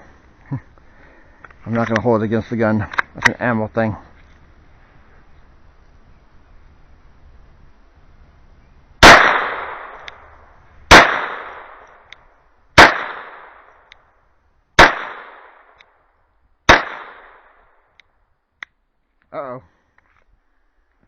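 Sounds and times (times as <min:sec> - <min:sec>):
gunshots echoing: 0:09.0 - 0:10.3, 0:10.9 - 0:11.9, 0:12.8 - 0:13.7, 0:14.8 - 0:15.7, 0:16.7 - 0:17.6.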